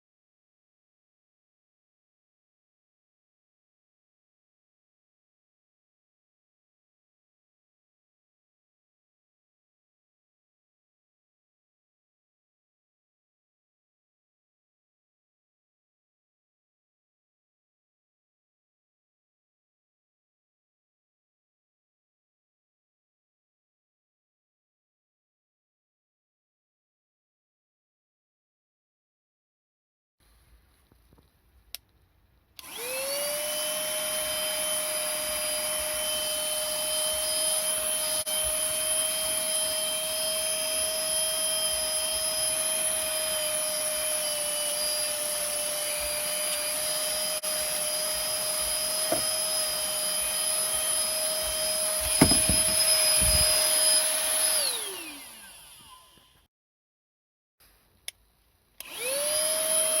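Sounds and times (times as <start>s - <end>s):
handheld vacuum cleaner whine: 32.6s - 56.5s, 58.8s - 60.0s
knocks: 52.0s - 53.5s.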